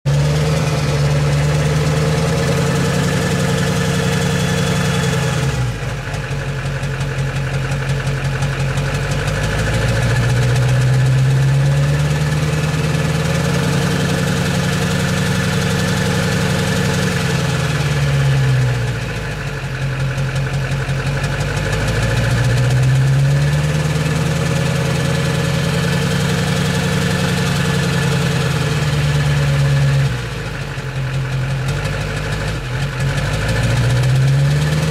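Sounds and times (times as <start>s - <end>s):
diesel engine revving: 0.0s - 34.9s
engine knock through exhaust: 0.0s - 34.9s.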